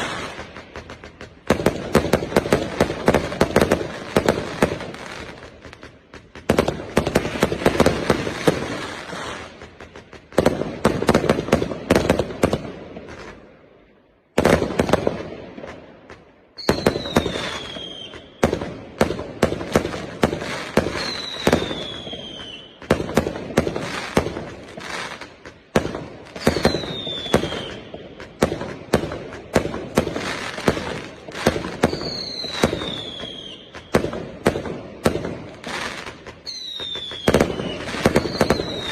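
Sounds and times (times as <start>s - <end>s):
falling fireworks whistle: 0.0s - 0.4s, 16.6s - 18.6s, 20.4s - 23.0s, 26.3s - 28.0s, 30.2s - 34.1s, 35.6s - 38.9s
fireworks cake firing bangs: 0.0s - 13.5s, 14.3s - 38.9s.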